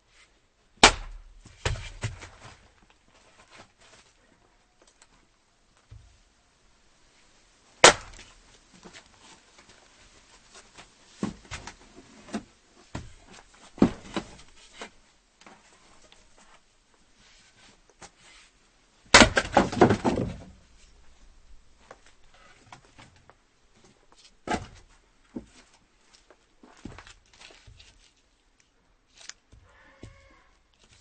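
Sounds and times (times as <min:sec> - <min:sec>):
axe striking wood: 0:00.8 - 0:02.3, 0:07.8 - 0:08.4, 0:19.1 - 0:20.4
wood knocking and clattering: 0:19.1 - 0:20.6.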